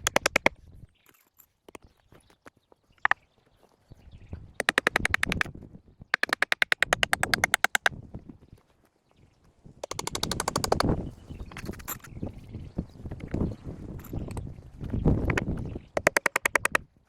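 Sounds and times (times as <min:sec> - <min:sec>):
rapid mechanical clicking: 0:00.0 - 0:00.5, 0:04.6 - 0:05.5, 0:06.2 - 0:07.9, 0:09.8 - 0:10.9, 0:16.0 - 0:16.8.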